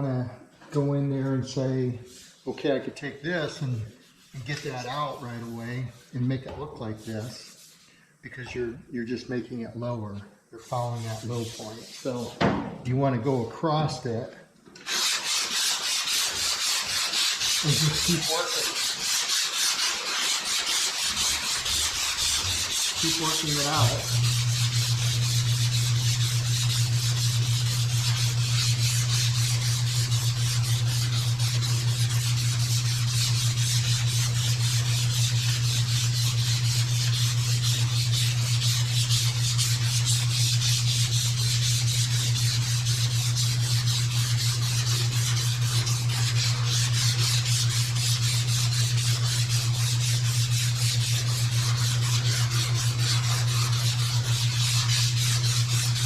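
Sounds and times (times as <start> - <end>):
sandpaper rasping on panel: 2.0 - 2.6, 3.6 - 7.9, 10.6 - 12.4, 14.8 - 56.0.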